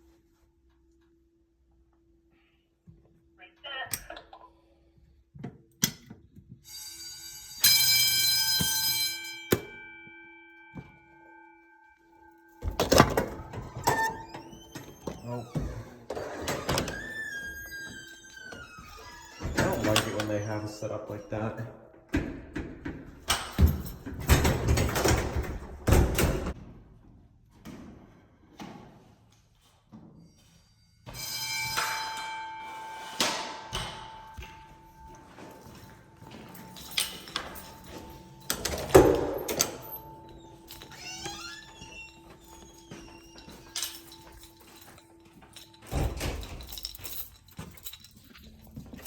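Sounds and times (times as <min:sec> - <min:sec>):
fire alarm bell ringing: 0:06.6 - 0:21.4, 0:30.3 - 0:49.0.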